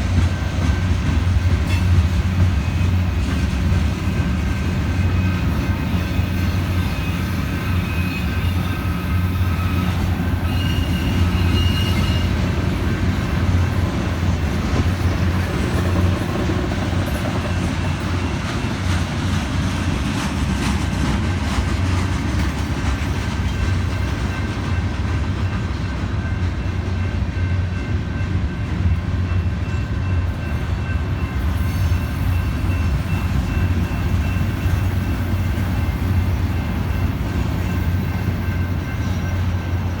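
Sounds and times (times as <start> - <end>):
train wheels rumbling on rail: 0.0 - 40.0
wheel squeal: 6.0 - 12.4.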